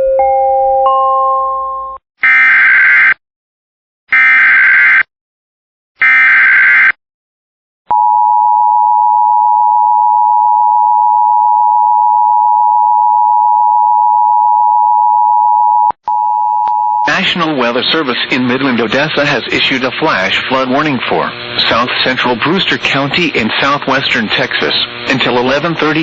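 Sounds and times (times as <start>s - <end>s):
digital data bursts: 21.4s - 26.0s.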